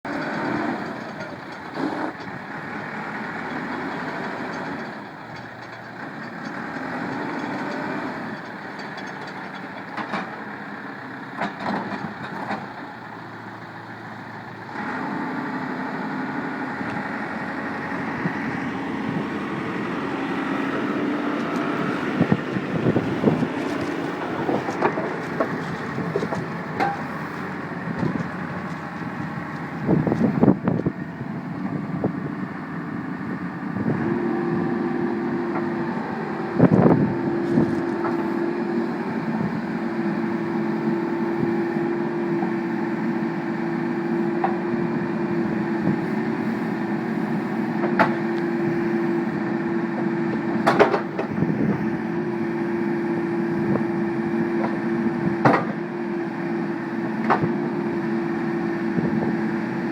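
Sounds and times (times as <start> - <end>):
diesel engine running: 0.0 - 59.9
knocks and clanks: 23.0 - 27.3.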